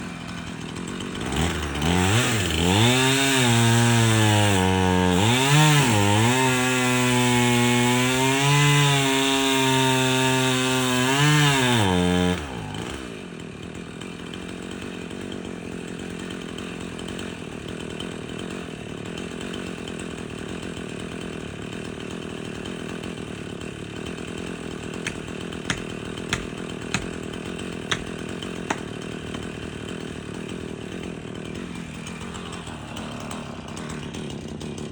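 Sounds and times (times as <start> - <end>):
chainsaw cutting wood: 0.0 - 34.9
hammer striking wedge: 25.0 - 27.3, 27.9 - 28.9.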